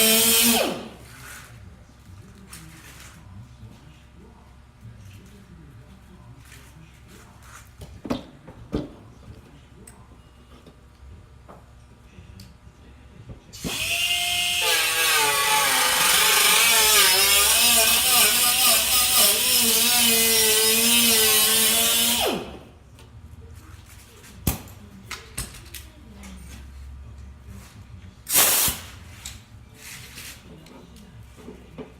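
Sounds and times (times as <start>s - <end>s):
power tool cutting sheet metal: 0.0s - 0.9s, 13.6s - 22.6s.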